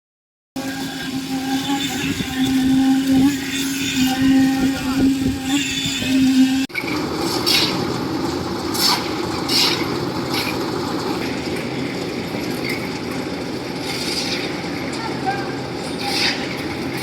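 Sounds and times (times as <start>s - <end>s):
steady hum: 0.6s - 17.0s
rumbling machinery clatter: 6.7s - 17.0s.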